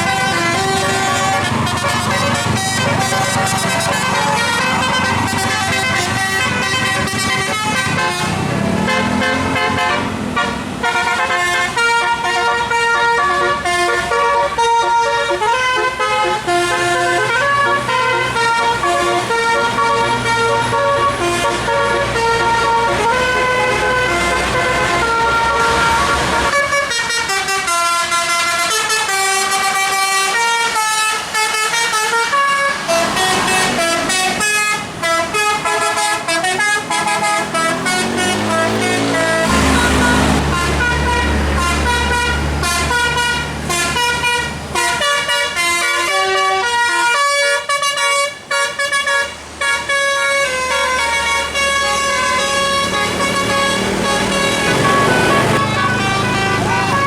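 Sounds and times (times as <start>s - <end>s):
bus engine running: 0.0s - 57.0s
musical air horn tune: 0.0s - 57.0s.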